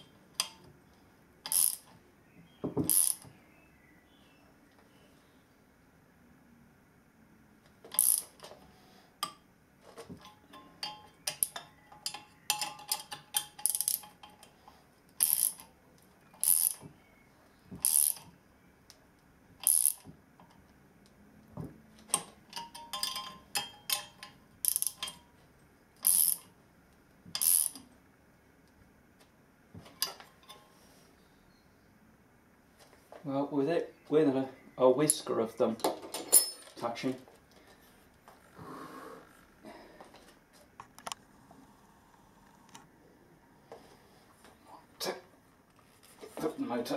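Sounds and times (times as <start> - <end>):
ratchet wrench clicking: 1.4 - 1.9, 7.9 - 8.5, 11.3 - 14.3, 15.2 - 15.7, 16.4 - 16.8, 17.8 - 18.3, 19.6 - 20.1, 22.9 - 25.2, 26.0 - 26.5, 27.4 - 27.8.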